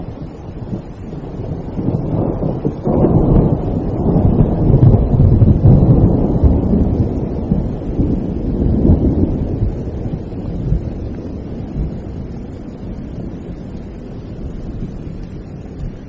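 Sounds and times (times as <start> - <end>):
steady rain: 0.0 - 16.0
thunder rumbling: 0.0 - 16.0.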